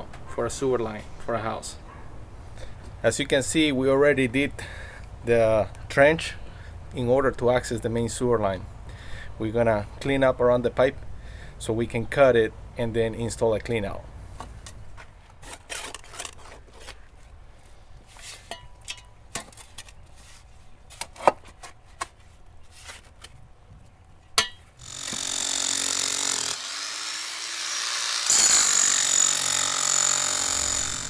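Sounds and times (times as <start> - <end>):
power tool running: 24.8 - 31.0.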